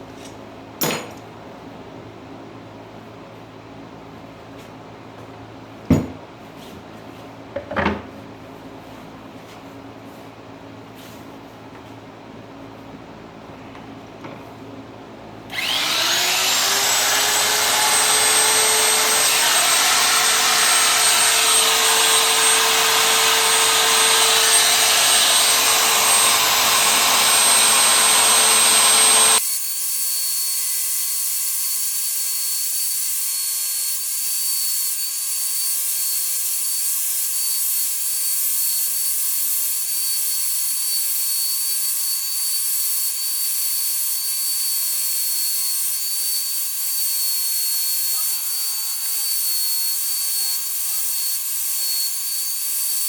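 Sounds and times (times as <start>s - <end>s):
power tool working wood: 15.5s - 29.4s.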